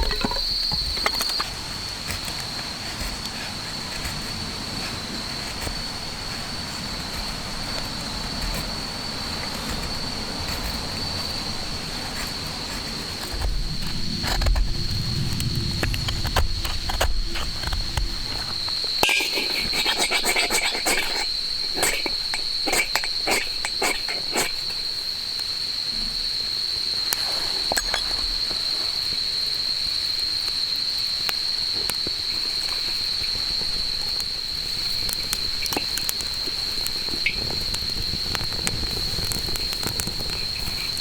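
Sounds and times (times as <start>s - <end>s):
insects chirring: 0.0s - 41.0s.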